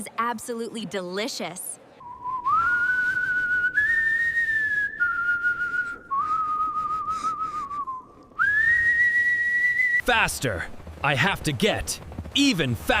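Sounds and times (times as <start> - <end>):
person whistling a slow tune: 2.0 - 10.0.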